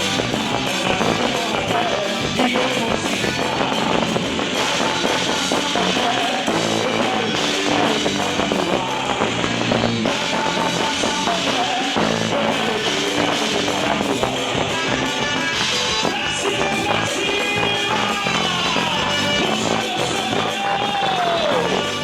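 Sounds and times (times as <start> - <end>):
band music with drums and guitar: 0.0 - 22.0.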